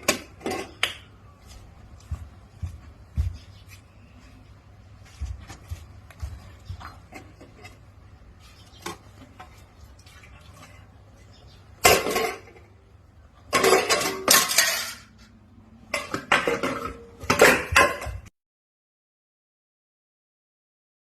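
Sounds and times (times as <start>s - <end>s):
dishes and cutlery clattering: 0.0s - 0.8s, 11.8s - 12.7s, 13.5s - 15.2s, 15.9s - 18.3s.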